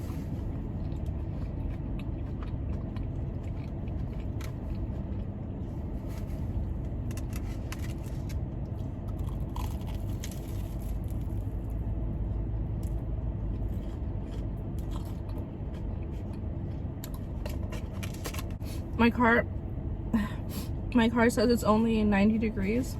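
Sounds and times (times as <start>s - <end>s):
eating crunches: 0.0s - 11.8s, 12.7s - 18.6s
car air conditioning hum: 0.0s - 22.9s.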